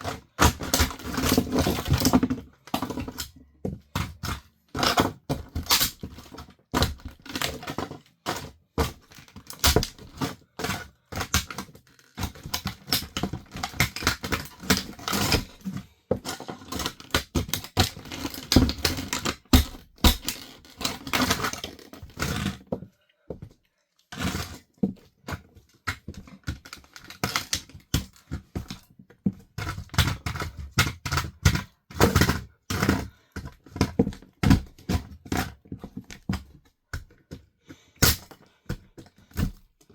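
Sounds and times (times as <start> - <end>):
plastic toy cracking underfoot: 0.0 - 22.8, 24.1 - 39.9.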